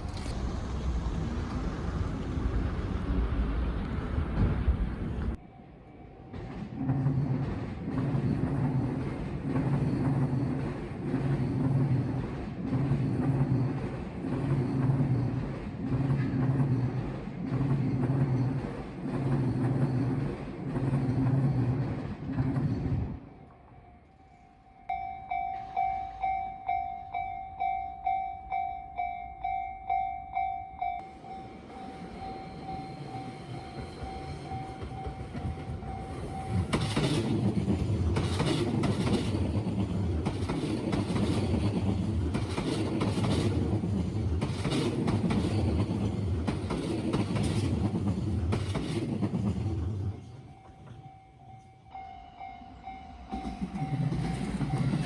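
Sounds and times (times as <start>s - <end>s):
train rumble: 0.0s - 51.2s, 52.0s - 55.0s
train wheel clacks: 6.3s - 23.2s, 31.3s - 51.1s, 52.9s - 55.0s
level-crossing alarm ringing: 23.7s - 37.1s.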